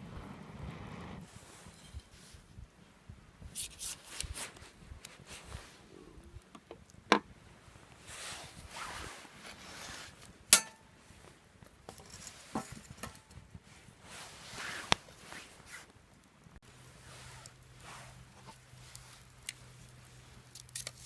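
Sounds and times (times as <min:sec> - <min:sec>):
soft rustling: 0:07.7 - 0:10.4, 0:12.0 - 0:16.0, 0:16.6 - 0:21.0.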